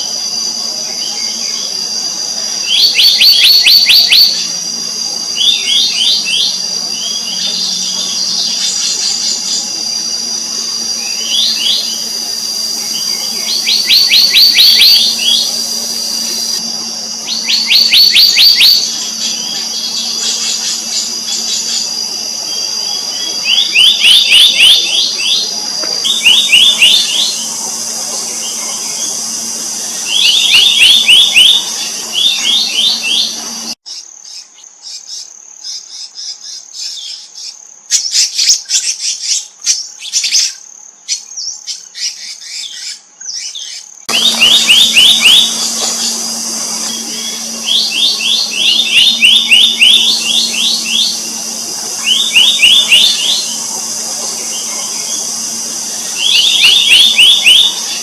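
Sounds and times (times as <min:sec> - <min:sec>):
steady high drone: 0:00.0 - 0:33.8, 0:44.1 - 0:58.0
higher thinner bird calls: 0:05.4 - 0:33.8, 0:44.1 - 0:58.0
bird ringing calls: 0:10.4 - 0:33.8, 0:44.1 - 0:58.0.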